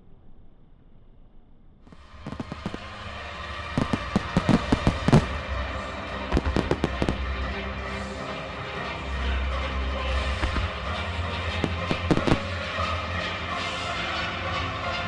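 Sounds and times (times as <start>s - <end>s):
fireworks bangs: 1.9s - 7.9s, 10.1s - 13.1s
fireworks crackling: 1.9s - 8.2s, 8.8s - 13.1s.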